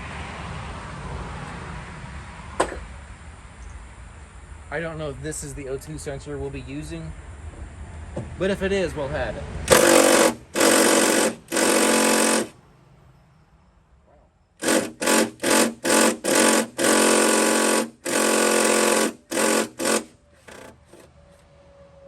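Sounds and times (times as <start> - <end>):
power tool bursts: 9.7 - 12.6, 14.6 - 21.1.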